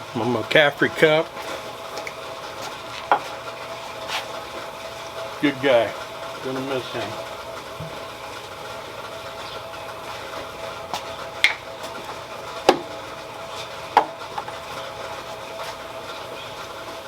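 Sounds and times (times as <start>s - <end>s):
rock tumbler humming: 0.0s - 17.0s.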